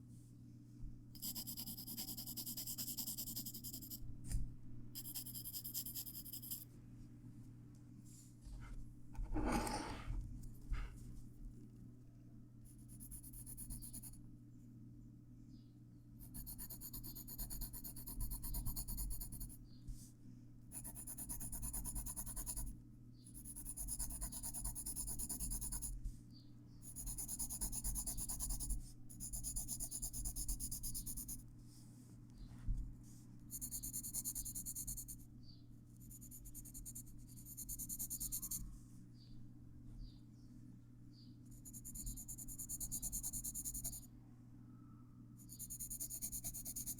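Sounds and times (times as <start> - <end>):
pencil scratching on paper: 1.2 - 4.0, 5.0 - 6.6, 9.2 - 10.1, 16.2 - 19.6, 20.7 - 22.7, 23.4 - 26.0, 26.8 - 31.4, 33.5 - 35.2, 36.0 - 38.6, 41.5 - 44.1, 45.4 - 46.9.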